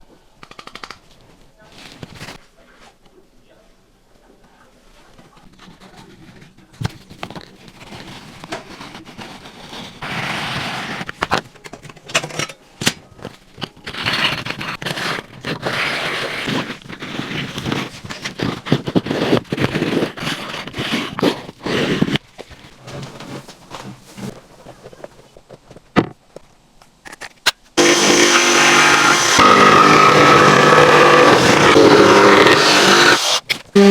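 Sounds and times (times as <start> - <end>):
scraping and rasping strokes: 7.3 - 11.2, 13.6 - 23.4, 27.8 - 33.9.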